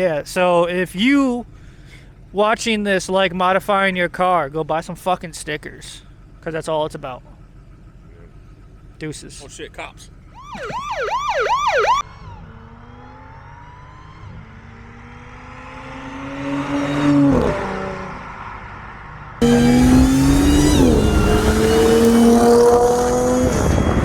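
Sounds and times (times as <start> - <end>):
car accelerating hard: 10.3 - 24.0
car accelerating past: 11.6 - 24.0.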